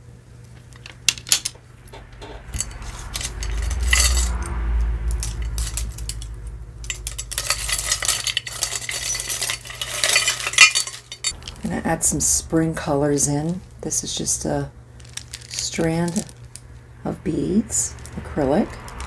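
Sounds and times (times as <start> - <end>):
low handling rumble: 0.1 - 19.0
metal jewelry clinking: 0.8 - 11.6, 15.0 - 16.6.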